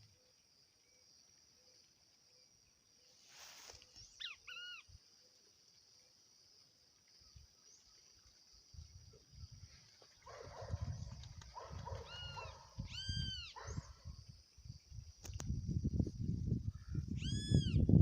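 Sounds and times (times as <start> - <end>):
rustle: 0.0 - 16.2
bird calls: 3.0 - 5.0, 9.8 - 14.1.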